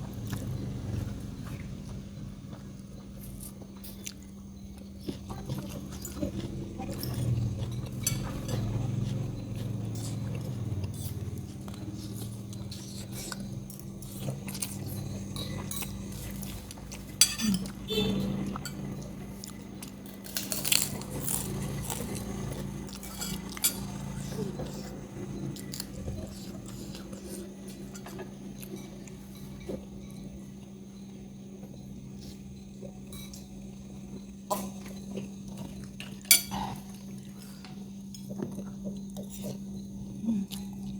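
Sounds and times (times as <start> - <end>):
chewing: 0.0 - 30.8, 31.7 - 40.9
cutlery clinking on a plate: 7.1 - 8.8, 15.3 - 18.9, 22.9 - 24.1, 36.0 - 36.9.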